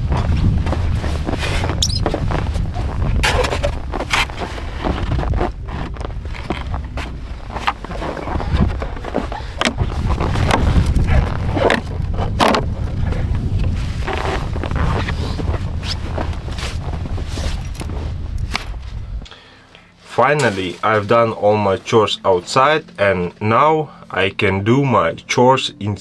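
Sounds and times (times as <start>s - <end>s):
scrapes and crunches: 0.0s - 19.3s, 20.0s - 23.1s
wind rumbling on microphone: 0.0s - 19.3s.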